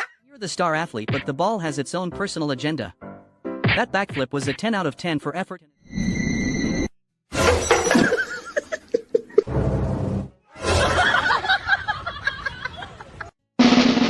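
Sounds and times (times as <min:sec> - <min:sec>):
people laughing and snickering: 0:10.6 - 0:13.3.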